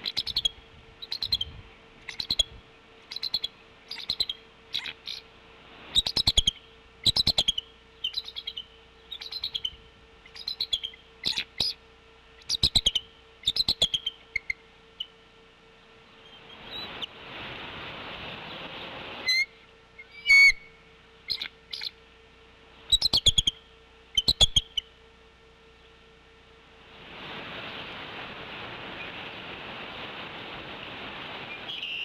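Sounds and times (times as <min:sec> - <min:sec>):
steady hiss: 0:00.0 - 0:08.3, 0:16.0 - 0:21.6, 0:26.2 - 0:32.0
eagle chattering call: 0:19.3 - 0:20.7.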